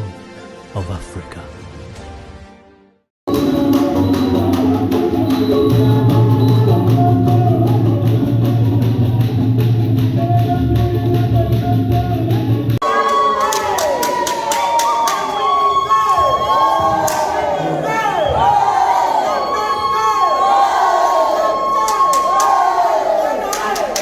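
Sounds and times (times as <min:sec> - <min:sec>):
music with sliding high notes: 0:03.3 - 0:12.8
music with steady drum beat: 0:03.3 - 0:12.8.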